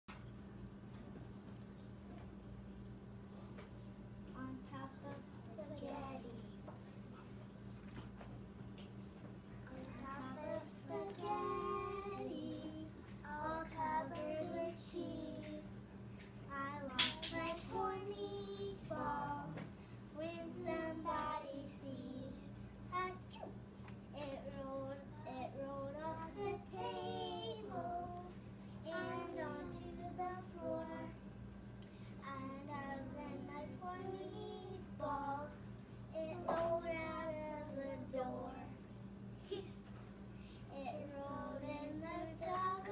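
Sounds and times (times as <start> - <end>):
low steady hum: 0.1 - 42.9
child singing: 9.7 - 15.8, 16.5 - 19.6, 20.2 - 23.5, 24.2 - 31.2, 32.2 - 38.8, 40.7 - 42.9.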